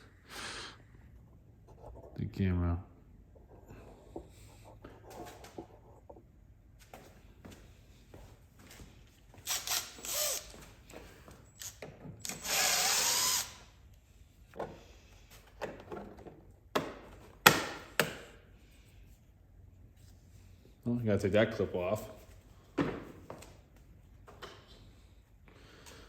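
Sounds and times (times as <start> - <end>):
cordless drill motor whirring: 9.4 - 10.6, 11.6 - 13.7.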